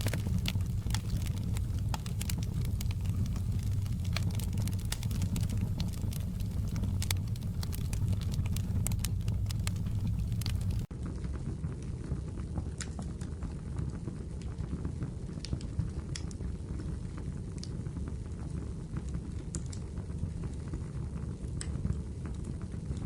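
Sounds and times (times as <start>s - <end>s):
fire pops: 0.0s - 10.9s
wood fire crackling: 0.0s - 10.9s.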